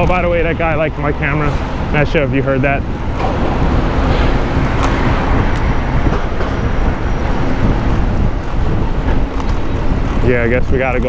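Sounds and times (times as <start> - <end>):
wind rushing over camera: 0.0 - 11.0.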